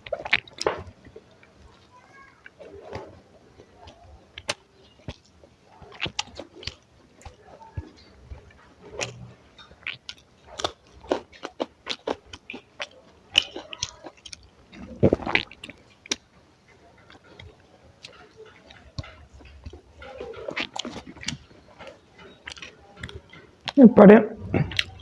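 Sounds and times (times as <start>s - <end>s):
person chewing and biting food: 8.4s - 16.2s, 17.0s - 23.8s, 24.4s - 25.0s.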